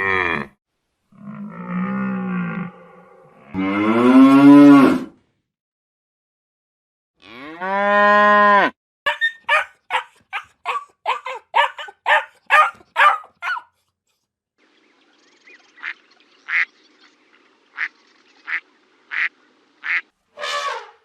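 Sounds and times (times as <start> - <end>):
cow mooing: 1.2 - 5.1, 7.2 - 8.7.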